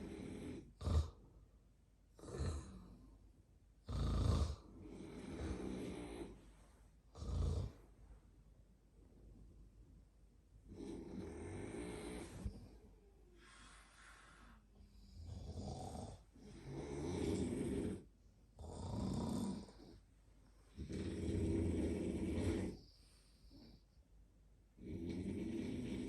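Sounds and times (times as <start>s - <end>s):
person snoring: 0.0s - 1.2s, 2.2s - 3.0s, 3.8s - 6.4s, 7.1s - 7.8s, 10.7s - 12.7s, 13.4s - 20.0s, 20.7s - 23.8s, 24.8s - 26.0s.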